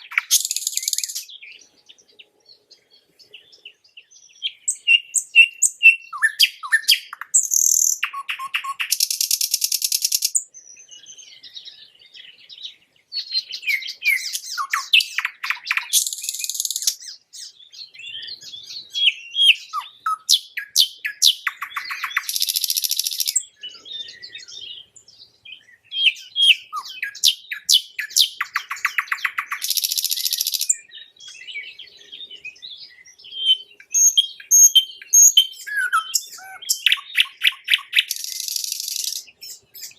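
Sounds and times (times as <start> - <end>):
nightingale singing: 0.0 - 39.9.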